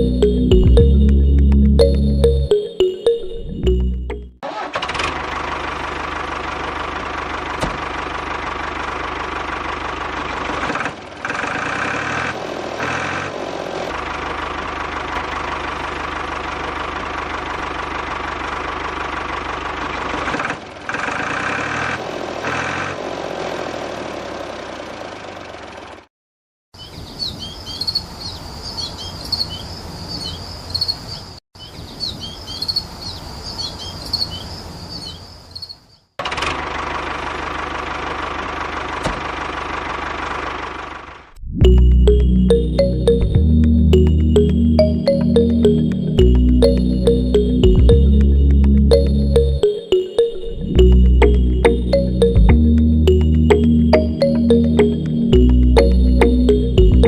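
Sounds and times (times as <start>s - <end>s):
high chirps: 0.0s - 4.4s, 41.6s - 57.0s.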